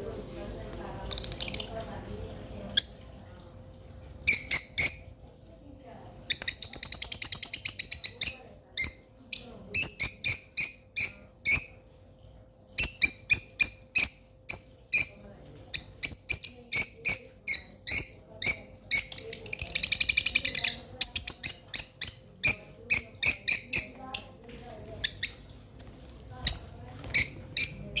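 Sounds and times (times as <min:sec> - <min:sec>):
lovebirds chirping: 0:01.0 - 0:01.8, 0:04.3 - 0:05.1, 0:06.3 - 0:11.8, 0:12.8 - 0:25.7, 0:26.3 - 0:28.0
rattling bird chatter: 0:01.0 - 0:01.8, 0:15.8 - 0:24.4.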